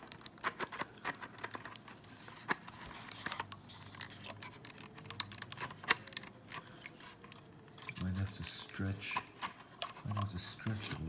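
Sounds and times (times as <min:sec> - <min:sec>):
plastic model shell clicking: 0:02.4 - 0:07.4.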